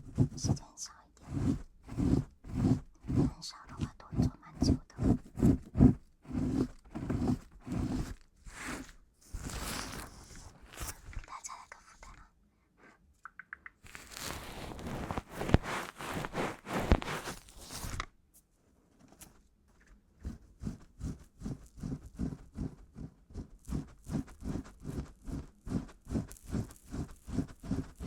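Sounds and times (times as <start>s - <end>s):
rustling: 5.0s - 11.3s, 13.9s - 28.0s
sharp clicks: 13.2s - 13.9s.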